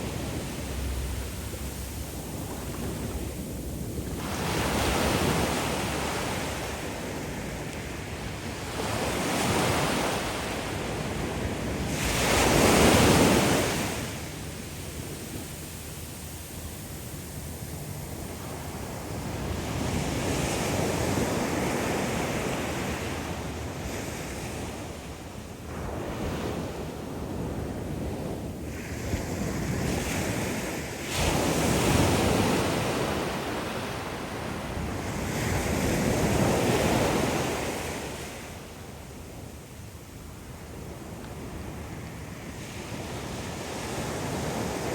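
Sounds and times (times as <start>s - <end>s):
ocean waves breaking: 0.0s - 23.0s.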